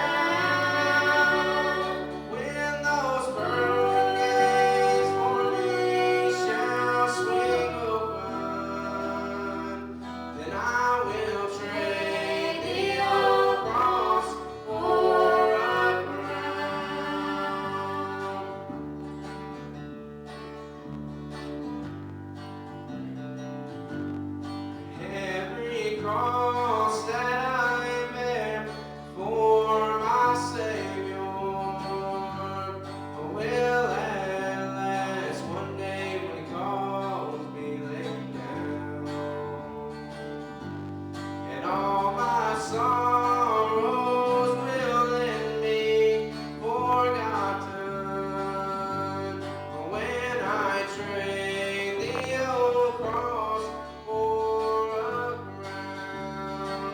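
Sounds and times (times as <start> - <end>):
person singing: 0.0 - 18.8, 41.5 - 56.9
guitar: 0.0 - 56.9.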